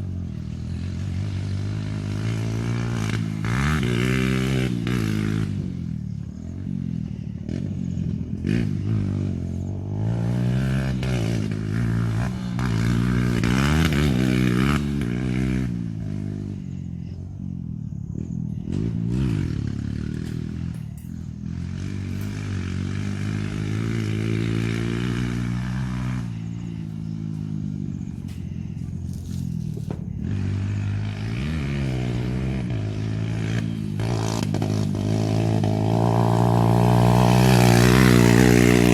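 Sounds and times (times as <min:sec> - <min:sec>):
dirt bike engine revving: 0:00.0 - 0:38.9
rattling over rough ground: 0:17.8 - 0:38.9.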